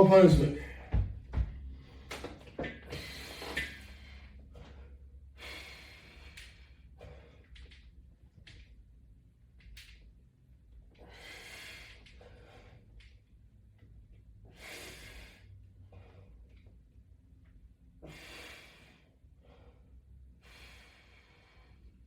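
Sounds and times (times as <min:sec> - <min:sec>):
man breathing hard: 0:02.8 - 0:07.7, 0:11.0 - 0:13.1, 0:14.4 - 0:16.5, 0:18.0 - 0:22.0.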